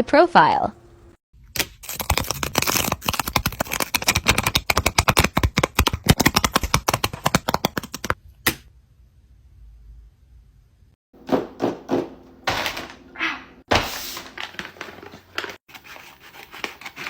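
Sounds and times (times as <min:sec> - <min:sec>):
packaging crinkling: 0:01.7 - 0:04.5, 0:13.9 - 0:15.6.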